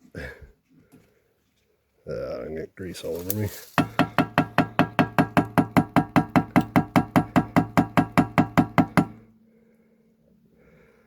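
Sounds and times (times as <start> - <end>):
air filter knocked on hard surface: 3.8 - 9.2.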